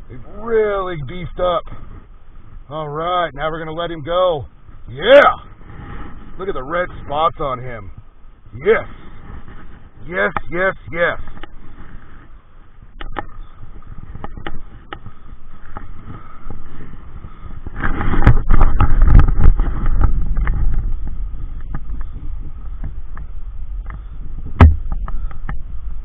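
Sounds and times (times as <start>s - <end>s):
microphone handling noise: 3.5s - 26.0s
sharp knock: 24.6s - 25.1s.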